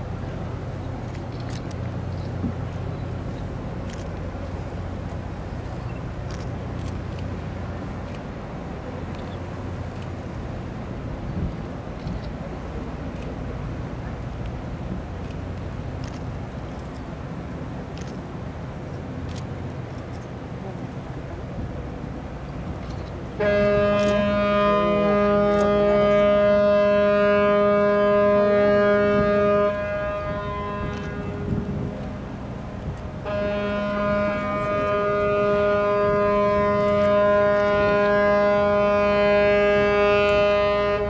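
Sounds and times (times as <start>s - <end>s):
deep ship horn blasts: 22.4s - 41.0s.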